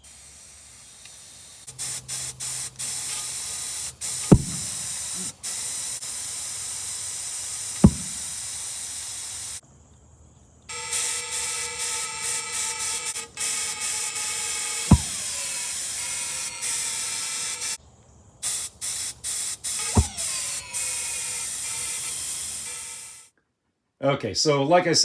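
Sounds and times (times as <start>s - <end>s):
compressed air hissing: 0.0s - 9.6s, 10.7s - 17.8s, 18.4s - 23.3s
steady multi-tone buzz: 0.0s - 9.6s, 10.7s - 17.8s, 18.4s - 23.3s
pulse jet sharp pops: 0.8s - 9.6s, 12.5s - 17.8s, 18.4s - 23.0s.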